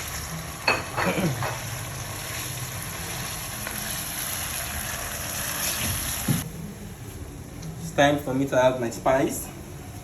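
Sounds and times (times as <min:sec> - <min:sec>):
stew sizzling in a pan: 0:00.0 - 0:06.4.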